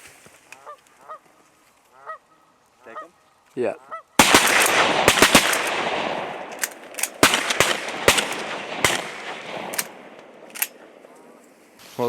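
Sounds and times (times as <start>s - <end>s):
shotgun shots echoing: 4.2s - 11.1s.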